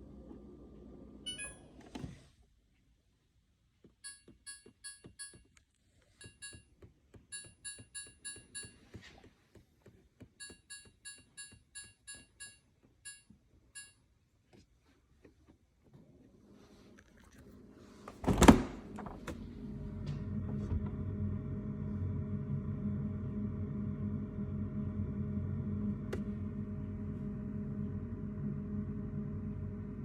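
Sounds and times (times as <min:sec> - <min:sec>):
refrigerator hum: 0:16.3 - 0:30.0.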